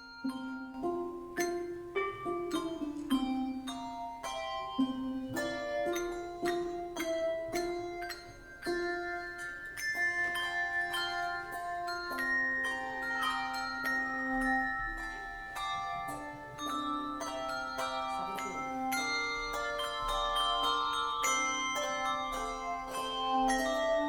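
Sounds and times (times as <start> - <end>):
handbell choir playing: 0.0 - 24.0.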